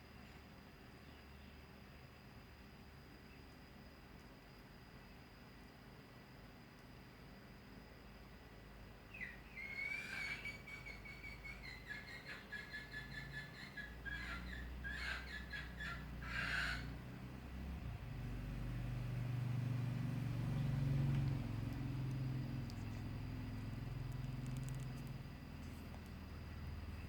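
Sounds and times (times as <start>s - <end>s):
bird calling: 9.1s - 17.0s
low engine hum: 10.5s - 27.0s.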